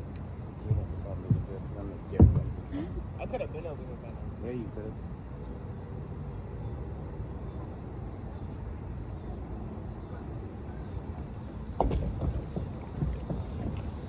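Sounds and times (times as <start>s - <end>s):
low outdoor rumble: 0.0s - 14.0s
short knocks: 0.6s - 2.8s.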